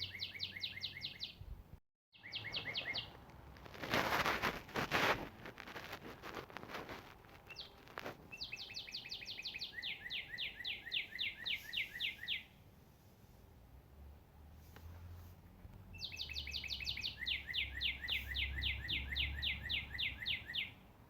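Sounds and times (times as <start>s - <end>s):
songbird trilling: 0.0s - 1.4s, 2.2s - 3.2s, 7.5s - 12.5s, 16.0s - 20.8s
faint rustling: 2.6s - 9.2s.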